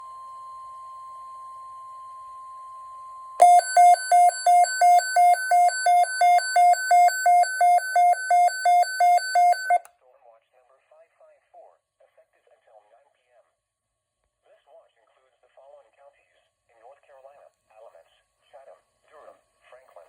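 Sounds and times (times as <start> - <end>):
faint steady tone: 0.0 - 9.9
electronic two-tone alarm: 0.9 - 9.9.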